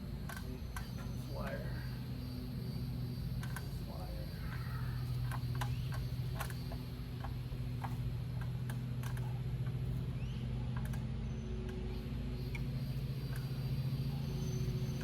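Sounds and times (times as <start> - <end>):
low hum: 0.0 - 15.0
light clicks: 0.2 - 1.2, 3.3 - 3.9, 4.5 - 9.8, 10.7 - 11.9, 12.5 - 13.6.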